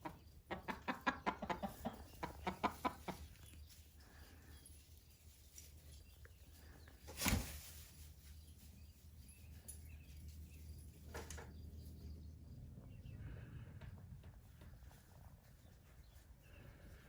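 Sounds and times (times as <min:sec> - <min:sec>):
faint chickens clucking: 0:00.0 - 0:07.2
steady low hum: 0:11.6 - 0:15.9.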